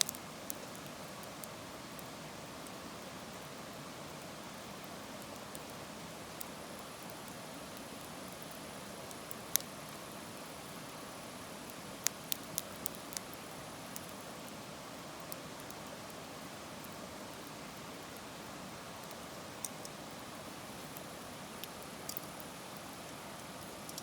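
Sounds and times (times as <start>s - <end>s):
wood fire hissing and crackling: 0.0s - 24.0s
fire popping: 11.6s - 14.2s, 20.8s - 24.0s.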